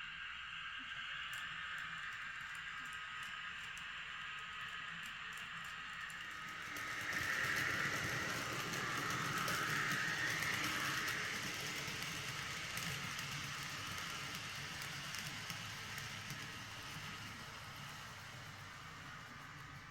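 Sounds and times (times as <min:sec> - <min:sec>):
model train motor hum: 0:00.6 - 0:19.9
wheels rolling on rails: 0:04.7 - 0:19.9.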